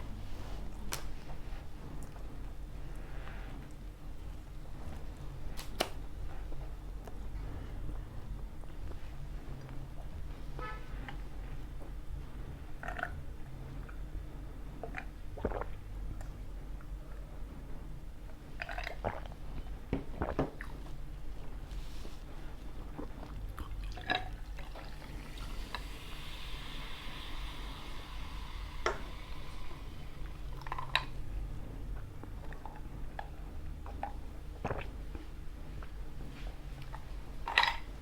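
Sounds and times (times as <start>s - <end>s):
drink poured into a glass: 23.9s - 31.2s.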